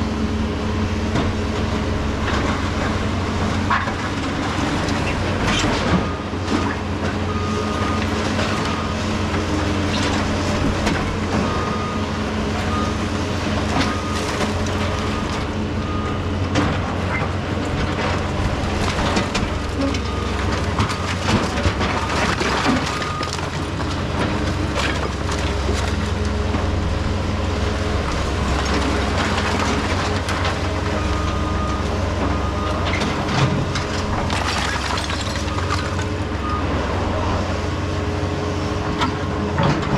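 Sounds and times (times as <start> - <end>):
diesel heavy equipment running: 0.0 - 39.9
broken concrete clanking and scraping: 16.5 - 26.8, 28.0 - 36.3.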